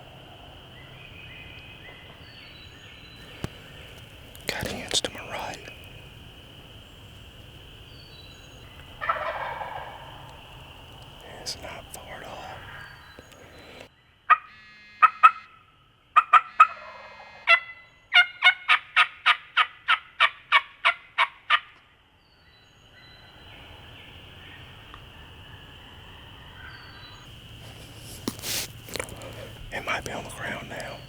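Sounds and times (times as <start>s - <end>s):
wild turkey yelping: 8.8s - 10.4s, 16.2s - 21.8s.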